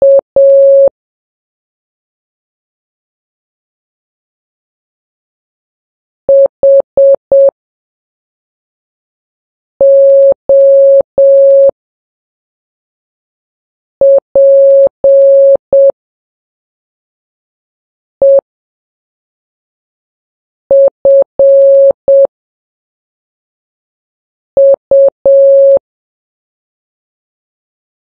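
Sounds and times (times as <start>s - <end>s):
morse code beeps: 0.0s - 0.9s, 6.3s - 7.5s, 9.8s - 11.7s, 14.0s - 15.9s, 18.2s - 18.4s, 20.7s - 22.3s, 24.6s - 25.8s.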